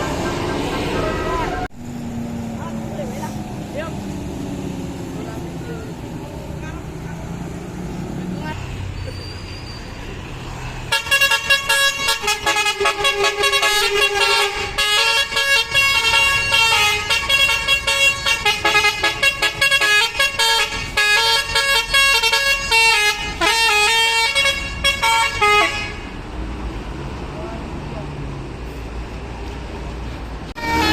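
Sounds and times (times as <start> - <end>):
musical air horn melody: 10.9 - 26.1, 30.6 - 30.9.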